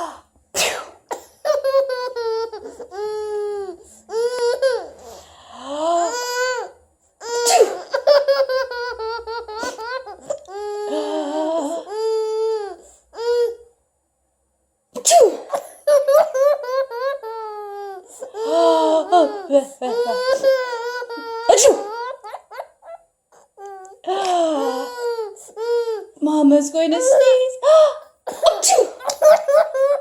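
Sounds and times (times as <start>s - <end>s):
baby laughing: 1.4s - 4.9s, 6.0s - 12.7s, 15.5s - 23.0s, 28.3s - 30.0s.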